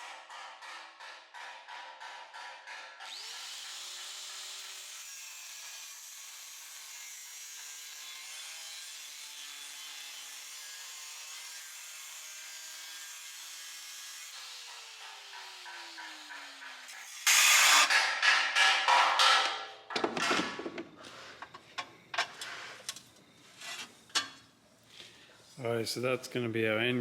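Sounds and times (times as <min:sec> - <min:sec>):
power tool grinding steel: 0:02.4 - 0:18.0.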